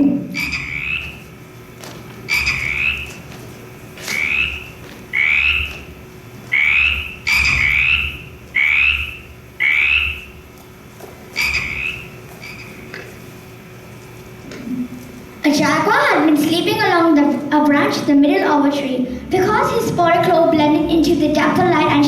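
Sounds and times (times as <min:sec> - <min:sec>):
frog croaking: 0:00.4 - 0:01.3, 0:02.3 - 0:03.2, 0:04.1 - 0:05.9, 0:06.5 - 0:10.4, 0:11.4 - 0:13.2.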